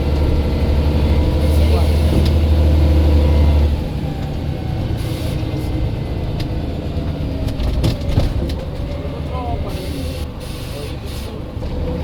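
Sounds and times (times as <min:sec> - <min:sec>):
bus diesel engine droning: 0:00.0 - 0:12.0.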